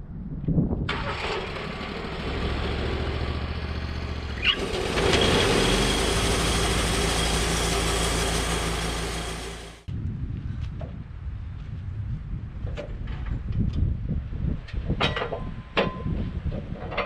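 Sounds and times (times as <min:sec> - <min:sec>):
sawmill engine running: 0:00.9 - 0:09.9.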